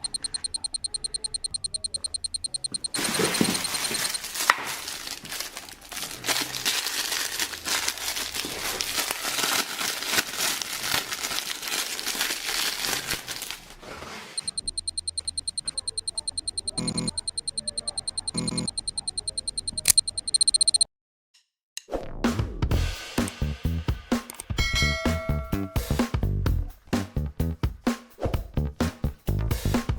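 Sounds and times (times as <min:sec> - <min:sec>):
fast high ticking: 0:00.0 - 0:04.2, 0:14.4 - 0:20.9
plastic packaging crinkling and tearing: 0:03.0 - 0:14.0.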